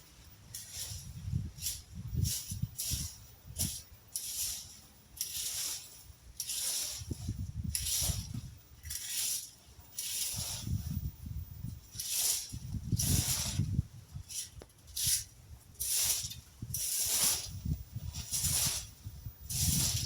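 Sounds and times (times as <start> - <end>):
rake scraping through leaves: 0.0 - 20.0
wind buffeting microphone: 0.4 - 4.1, 6.9 - 9.0, 10.3 - 20.0.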